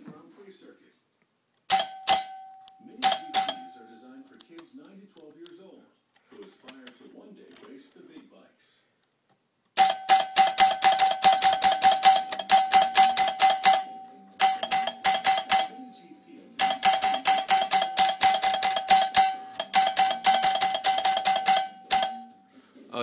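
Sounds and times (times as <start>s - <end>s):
doorbell ringing rapidly: 1.7s - 4.0s, 9.8s - 22.5s.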